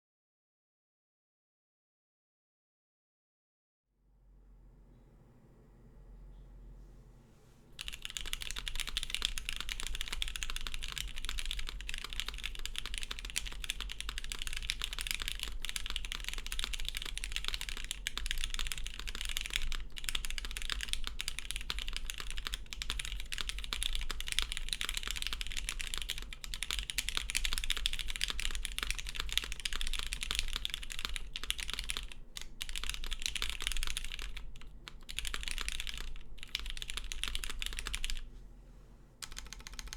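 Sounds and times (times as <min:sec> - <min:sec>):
fast mechanical keyboard typing: 0:07.8 - 0:38.3, 0:39.2 - 0:39.9.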